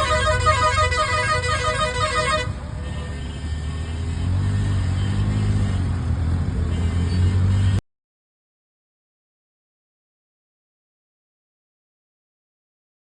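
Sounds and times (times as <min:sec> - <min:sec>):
auto-rickshaw engine drone: 0:00.0 - 0:07.8.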